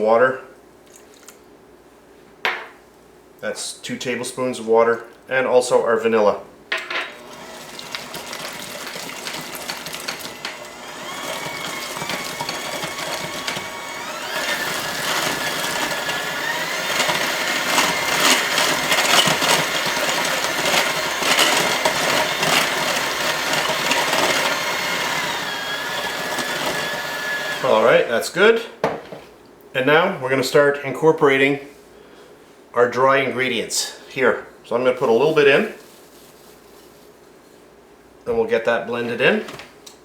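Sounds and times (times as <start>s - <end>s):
electric mixer motor whining: 7.1s - 28.1s.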